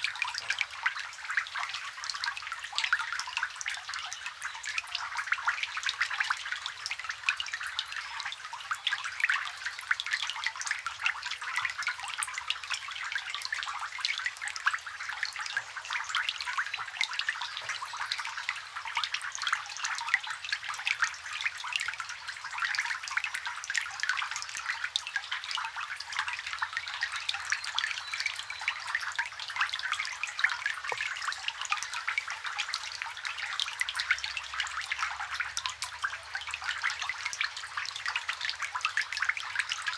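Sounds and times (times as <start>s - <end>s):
rain falling on water: 0.0s - 39.9s.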